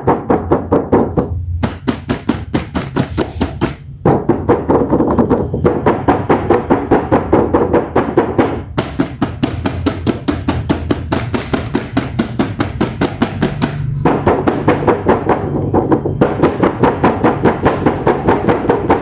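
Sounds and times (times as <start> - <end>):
background music with fast beat: 0.0 - 19.0.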